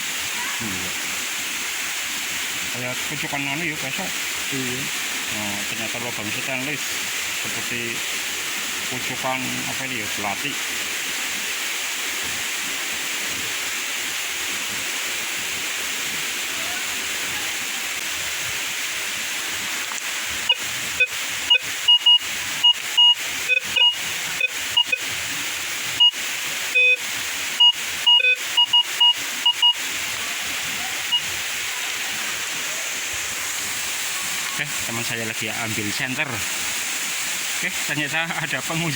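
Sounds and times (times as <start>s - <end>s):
waterfall rushing: 0.0s - 38.9s
metal detector beeps: 20.4s - 25.1s, 26.0s - 27.0s, 27.6s - 29.8s.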